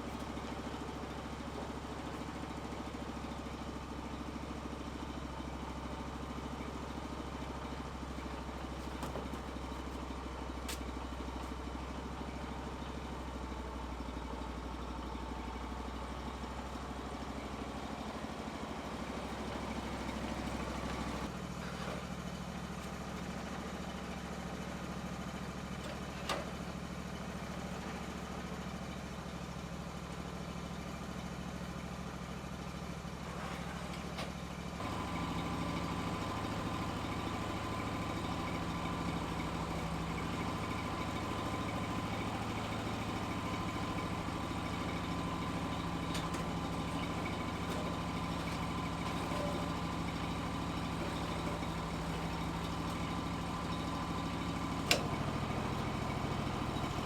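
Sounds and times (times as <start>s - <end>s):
engine running: 14.1s - 28.9s, 32.2s - 57.0s.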